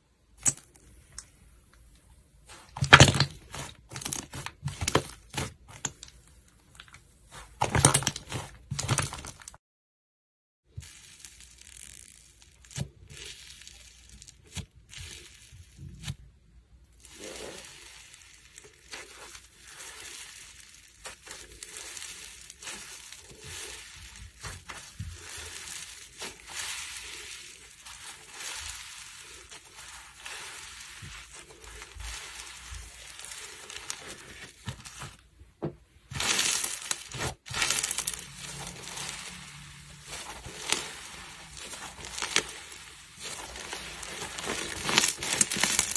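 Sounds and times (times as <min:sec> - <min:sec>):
slime squished by hand: 0:02.5 - 0:06.2.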